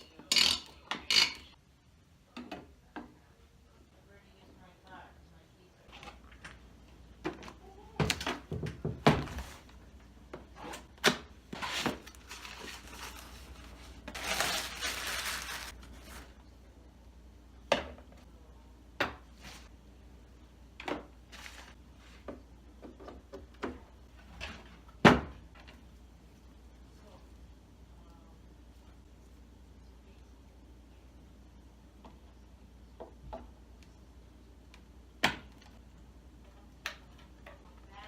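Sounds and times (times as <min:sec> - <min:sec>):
rustling: 0:11.5 - 0:16.4.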